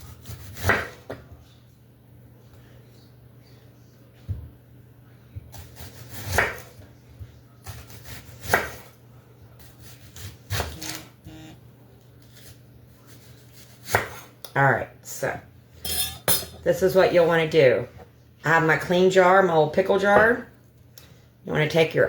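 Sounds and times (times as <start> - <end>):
knife slicing onion on wooden board: 0.0 - 1.2, 5.4 - 6.8, 7.6 - 9.0, 9.6 - 11.1, 12.2 - 14.3.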